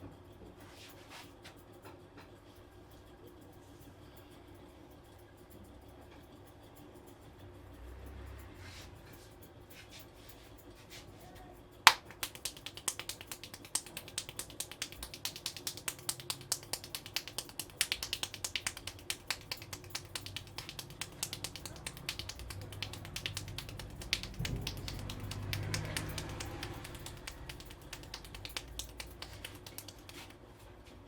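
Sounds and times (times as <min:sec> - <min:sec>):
hands slapping in massage: 0:11.9 - 0:30.4.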